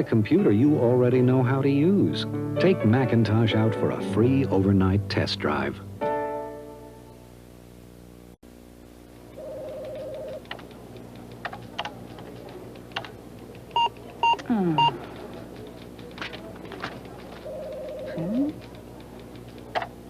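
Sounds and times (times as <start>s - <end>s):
computer keyboard keystrokes: 9.6s - 20.0s
electronic computer beeps: 13.8s - 15.0s.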